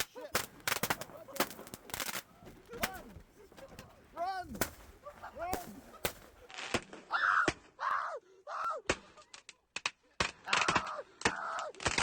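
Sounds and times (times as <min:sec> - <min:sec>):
fireworks bangs and crackles: 0:00.0 - 0:07.1.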